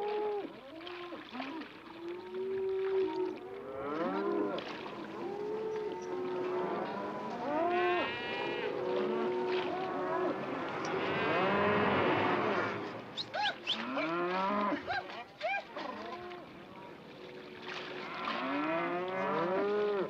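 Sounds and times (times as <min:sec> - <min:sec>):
livestock calling: 0:07.6 - 0:14.2.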